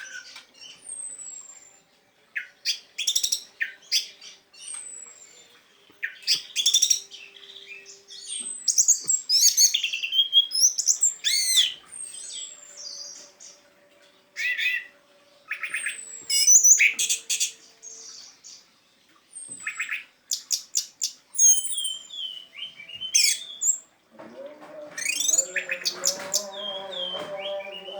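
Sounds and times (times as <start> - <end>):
thrush singing: 22.1 - 27.9.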